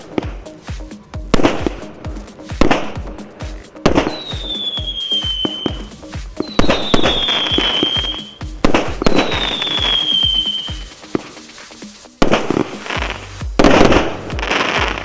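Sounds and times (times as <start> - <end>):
music with steady beat: 0.0 - 15.0
fireworks bangs: 1.3 - 15.0
descending firework whistle: 4.0 - 8.4, 9.0 - 11.4.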